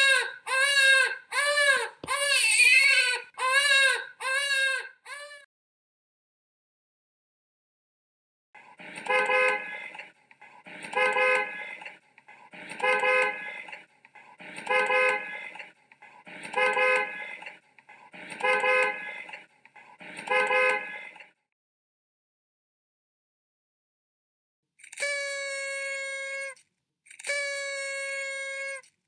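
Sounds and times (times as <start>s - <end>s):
car horn honking: 9.0s - 10.0s, 10.9s - 11.6s, 12.8s - 13.5s, 14.6s - 15.4s, 16.5s - 17.4s, 18.3s - 19.2s, 20.2s - 21.1s.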